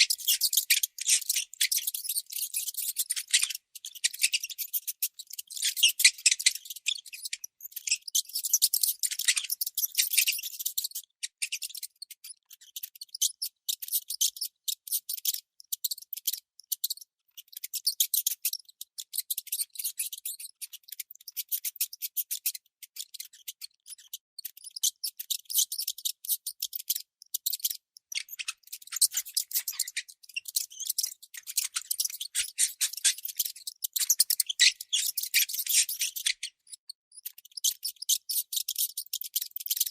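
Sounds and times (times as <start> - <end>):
baby mouse squeaking: 0.0 - 39.9.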